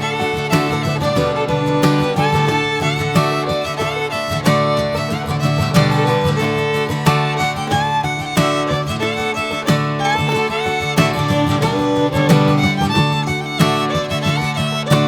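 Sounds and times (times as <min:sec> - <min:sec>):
fiddle melody: 0:00.0 - 0:15.0
plucked guitar: 0:00.0 - 0:15.0.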